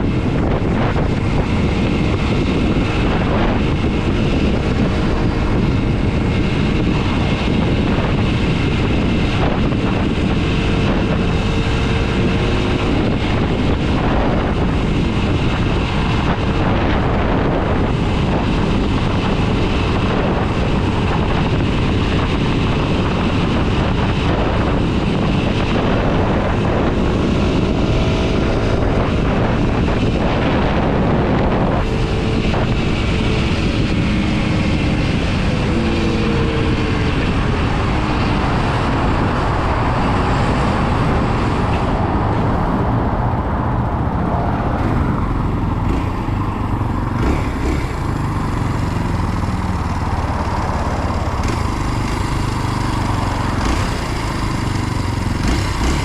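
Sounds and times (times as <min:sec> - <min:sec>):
motorcycle engine running: 0:00.0 - 0:56.0
wind noise on microphone: 0:00.0 - 0:56.0.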